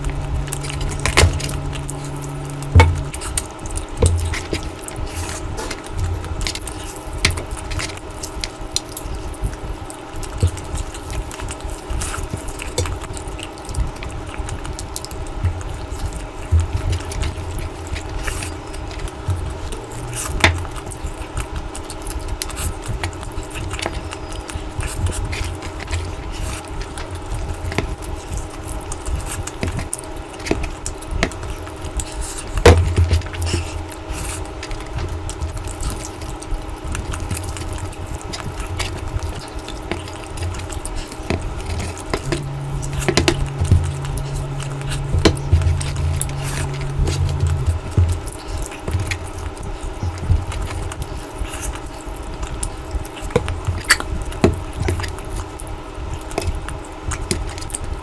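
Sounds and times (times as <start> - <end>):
chewing smacks and clicks: 0.0 - 58.0
steady low hum: 0.0 - 58.0.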